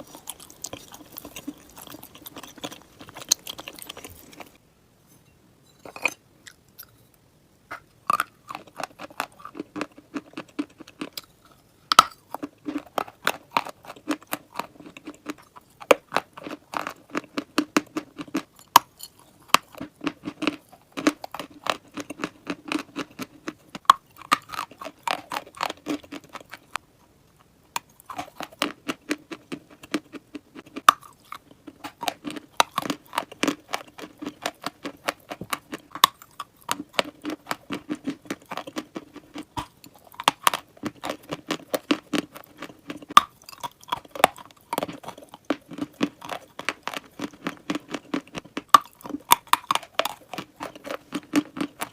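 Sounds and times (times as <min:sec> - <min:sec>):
crunchy chalk chewing: 0:00.0 - 0:04.6, 0:27.8 - 0:51.9.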